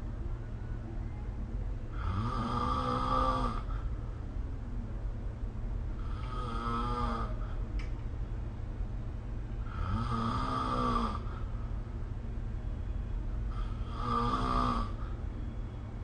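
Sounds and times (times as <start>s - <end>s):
steady low hum: 0.0s - 16.0s
person snoring: 1.9s - 3.8s, 6.0s - 7.4s, 9.6s - 11.4s, 13.5s - 15.0s.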